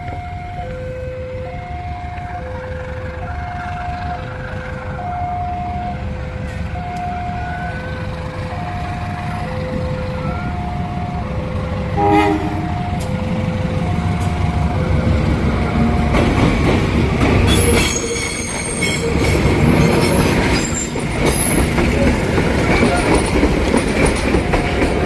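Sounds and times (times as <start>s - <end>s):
two-tone warning siren: 0.0s - 16.2s
train wheels rumbling and squealing: 0.0s - 25.0s
horn blast: 12.0s - 12.8s.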